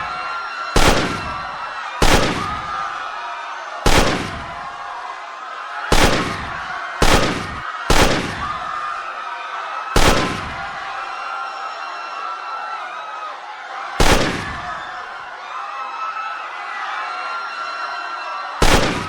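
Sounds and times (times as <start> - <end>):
panicked crowd shouting: 0.0 - 19.0
gunshots with echo: 0.8 - 2.8, 3.8 - 4.7, 5.9 - 8.7, 10.0 - 10.8, 14.0 - 14.9, 18.6 - 19.0.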